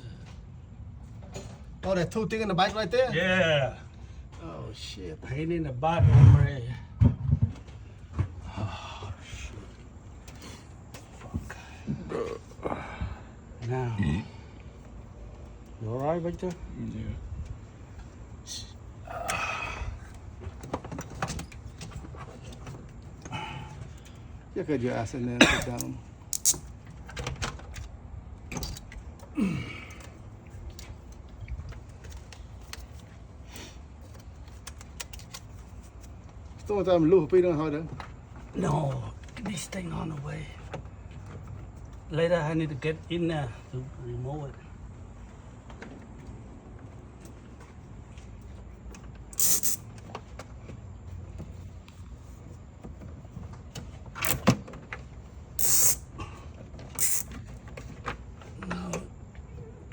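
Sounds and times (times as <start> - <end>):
tools clicking and clinking: 25.5 - 26.7, 49.3 - 50.1, 54.2 - 54.6, 55.6 - 56.0, 56.9 - 57.4.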